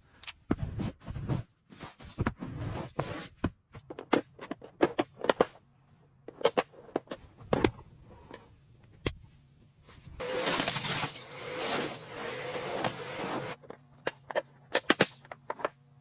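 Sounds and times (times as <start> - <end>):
scraping noises: 10.2 - 13.6.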